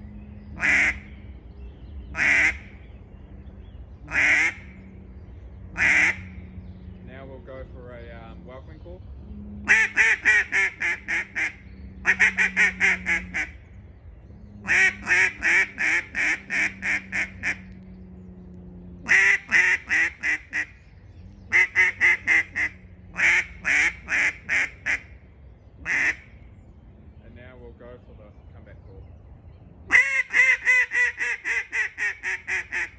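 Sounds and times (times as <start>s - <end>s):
duck call quacks: 0.6s - 1.0s, 2.2s - 2.6s, 4.1s - 4.7s, 5.8s - 6.2s, 9.7s - 13.6s, 14.7s - 17.6s, 19.1s - 20.7s, 21.5s - 25.0s, 25.8s - 26.2s, 29.9s - 32.9s.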